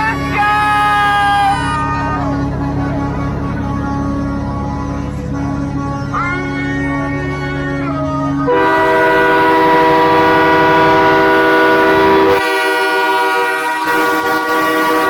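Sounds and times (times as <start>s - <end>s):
truck air horn blast: 8.4s - 15.0s.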